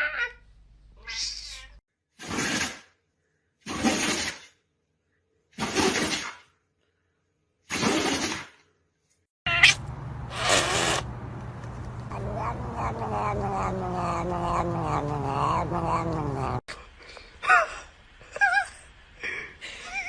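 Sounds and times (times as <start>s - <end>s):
cat hissing: 9.6s - 11.1s, 12.0s - 16.6s
cat yowling: 12.1s - 16.7s.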